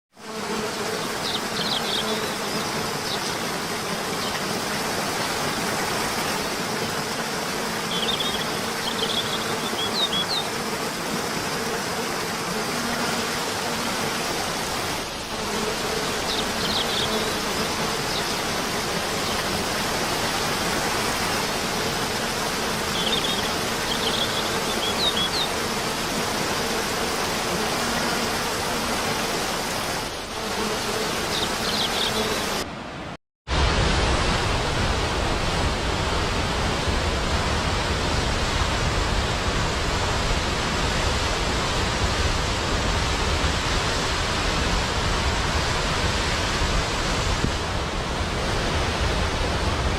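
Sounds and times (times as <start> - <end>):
waterfall rushing: 1.0 - 30.3.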